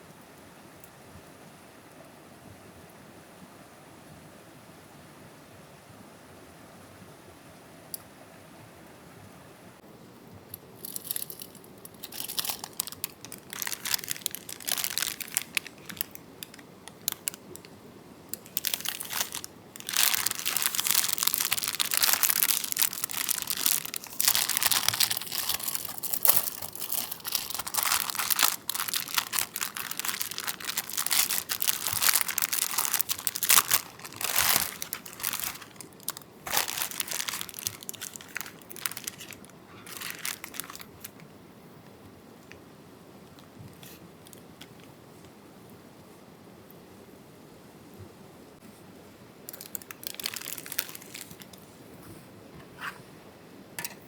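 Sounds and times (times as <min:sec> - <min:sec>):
packaging rustling and crackling: 0:10.6 - 0:41.2, 0:49.5 - 0:51.6.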